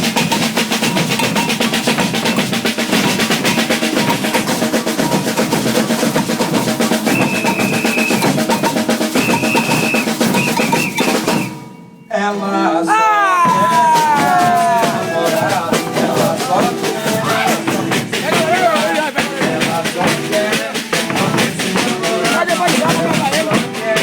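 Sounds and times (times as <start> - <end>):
shakers: 0.0 - 11.5, 13.5 - 24.0
alfaia bass drums: 0.0 - 11.8, 13.4 - 24.0
snare drums: 0.0 - 12.0, 13.4 - 24.0
high held tone: 7.0 - 17.8.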